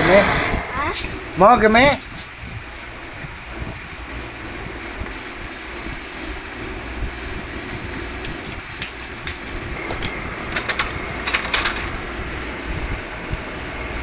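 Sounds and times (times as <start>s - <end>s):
refrigerator compressor running: 0.0s - 14.0s.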